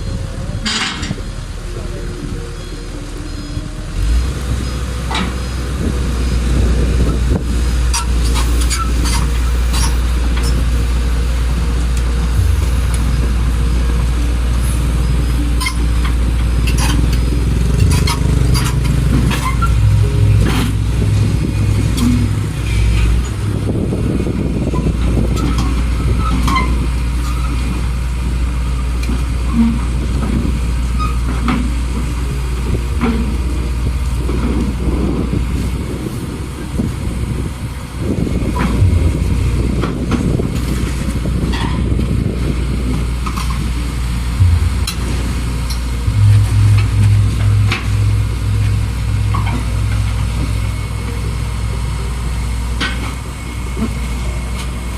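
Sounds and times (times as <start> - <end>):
excavator diesel engine running: 0.0 - 54.9
metallic clanks and knocks: 15.6 - 22.4, 44.4 - 50.7.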